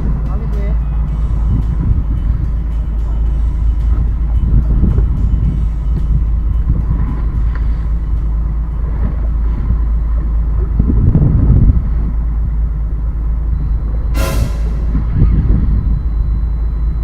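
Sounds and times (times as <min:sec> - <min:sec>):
boat engine low rumble: 0:00.0 - 0:17.0
short hissing burst: 0:14.2 - 0:15.0.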